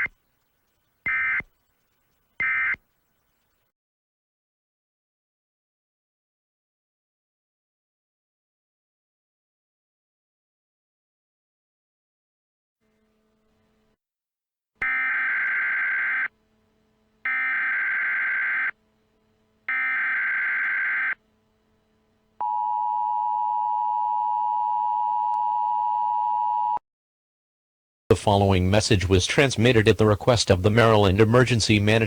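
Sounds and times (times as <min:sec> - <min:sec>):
digital data bursts: 0:00.0 - 0:03.6
two-tone attention signal: 0:19.7 - 0:21.2.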